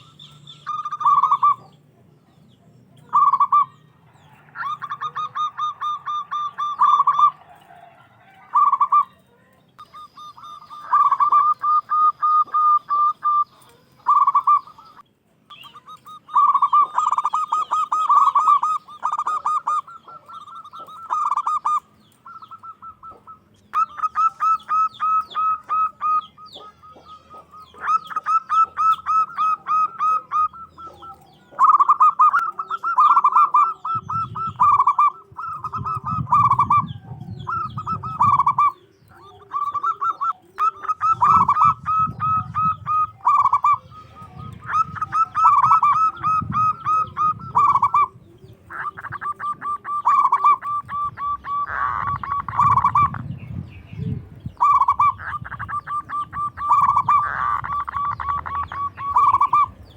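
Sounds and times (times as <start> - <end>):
dove cooing: 0.0 - 59.9.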